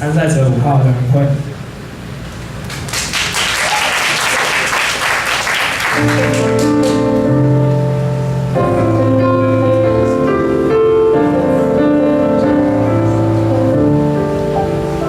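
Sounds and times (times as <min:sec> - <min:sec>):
audience applause: 0:02.7 - 0:07.1
slow piano chords: 0:05.0 - 0:15.0.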